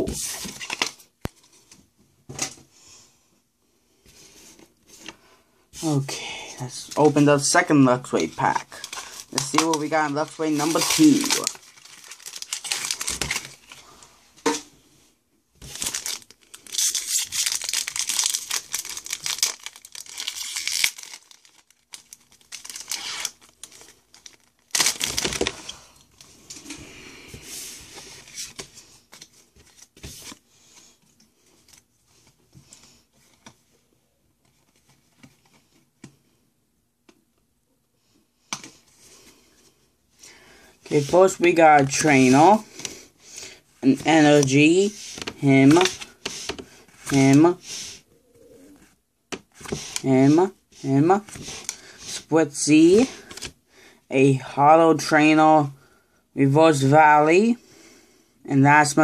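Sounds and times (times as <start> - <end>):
cards rustling: 6.9 - 13.9, 15.6 - 26.8, 43.8 - 48.0, 49.3 - 53.6
foil wrapper tearing and crinkling: 8.8 - 13.7, 15.7 - 25.6.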